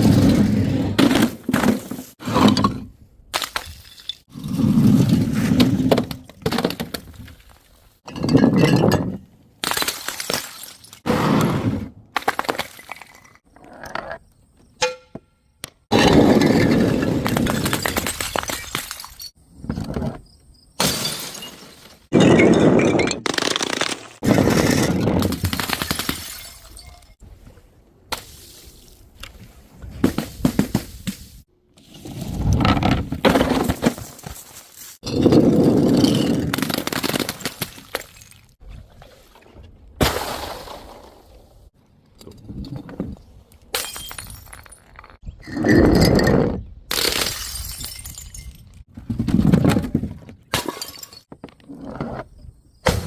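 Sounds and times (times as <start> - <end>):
objects clattering on hard ground: 3.4 - 9.3, 20.8 - 27.2, 31.9 - 38.5
glass shattering: 20.8 - 23.8, 25.6 - 27.2, 47.0 - 48.7.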